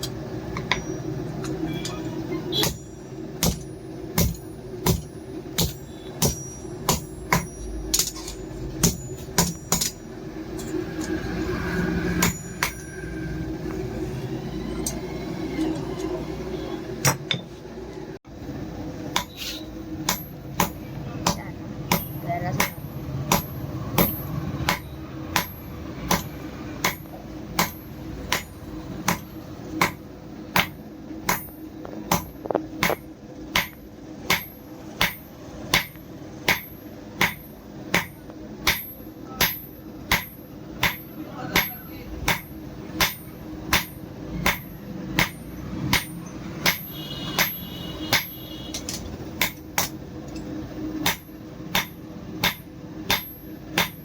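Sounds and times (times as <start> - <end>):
hammer striking steel on anvil: 0.0 - 13.4, 19.1 - 54.0.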